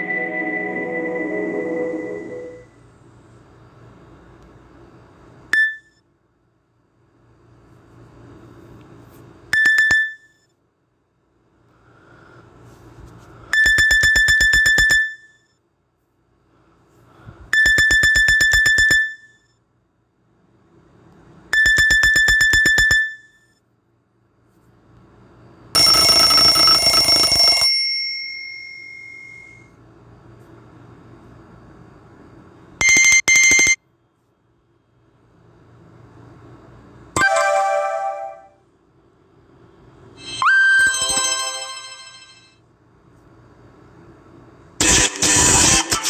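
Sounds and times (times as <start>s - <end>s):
bright ringing tone: 0.0s - 2.8s, 25.8s - 29.7s, 37.2s - 38.6s, 40.2s - 42.6s.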